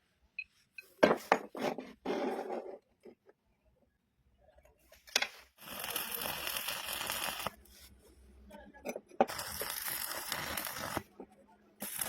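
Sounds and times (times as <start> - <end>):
arc welding crackling: 5.6 - 7.6, 9.3 - 11.1, 11.8 - 12.0.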